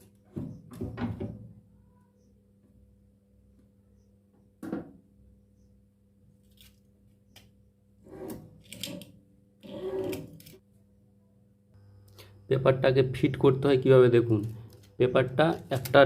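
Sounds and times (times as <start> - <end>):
faint steady hum: 5.2 - 15.8.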